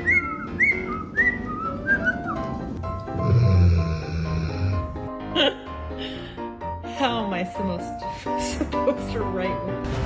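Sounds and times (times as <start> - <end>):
background music with held tones: 0.0 - 10.0.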